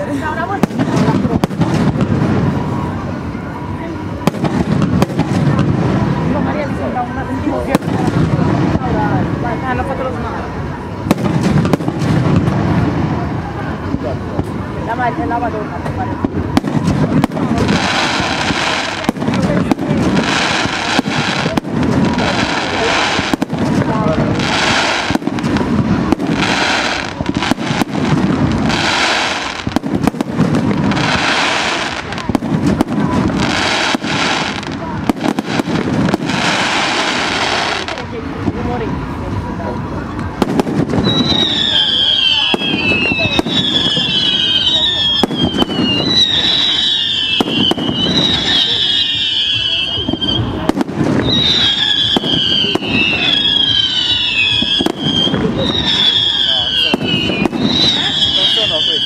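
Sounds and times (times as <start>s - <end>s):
continuous rumble: 0.0s - 59.0s
fireworks bangs and booms: 0.0s - 59.0s
firework whistles falling in pitch: 40.8s - 59.0s.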